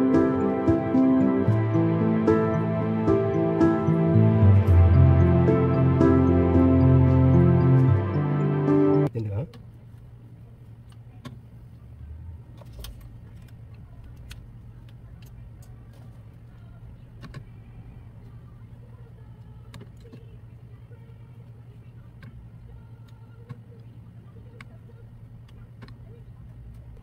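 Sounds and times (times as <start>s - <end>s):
steady low hum: 0.0s - 27.0s.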